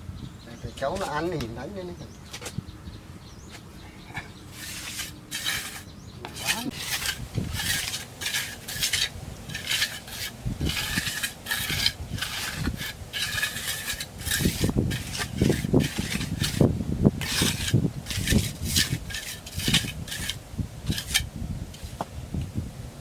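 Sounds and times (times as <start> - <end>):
hand tool rasping bamboo: 4.5 - 22.1.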